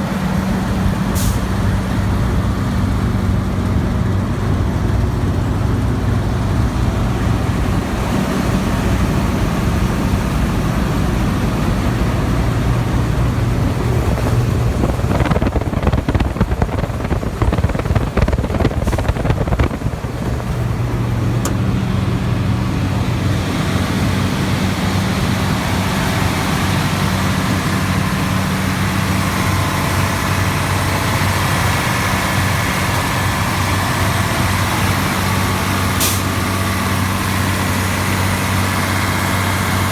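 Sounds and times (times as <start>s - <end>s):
diesel engine drone: 0.0s - 39.9s
rough rattling: 13.3s - 21.6s.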